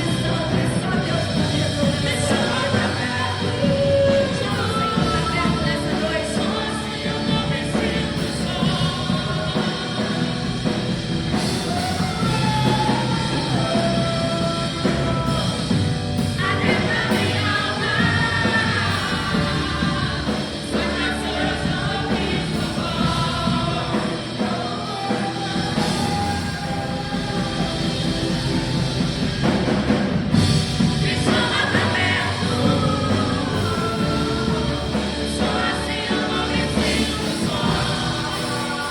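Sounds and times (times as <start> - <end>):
worship band with singing: 0.0 - 38.9.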